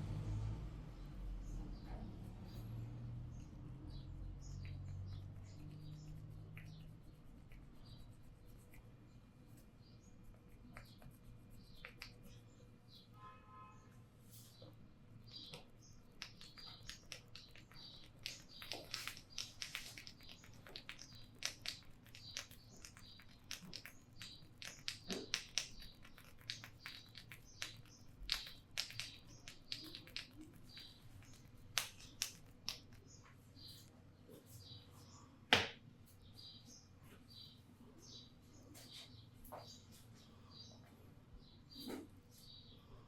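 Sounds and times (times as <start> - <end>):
fingers clicking and tapping on scalp: 4.5 - 8.9, 10.3 - 12.4, 15.3 - 33.2.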